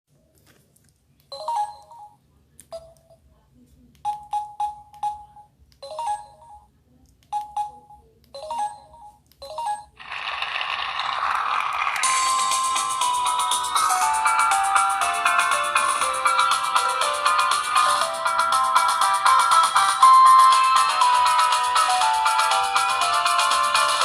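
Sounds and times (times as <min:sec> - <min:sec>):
phone ringtone: 0:01.3 - 0:02.2, 0:04.1 - 0:06.7, 0:07.3 - 0:10.2, 0:12.0 - 0:24.0
phone clicky beeps: 0:07.3 - 0:10.0.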